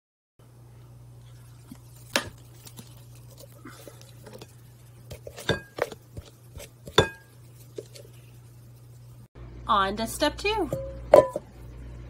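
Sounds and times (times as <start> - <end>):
eggs clinking on glass bowl: 6.9 - 7.3.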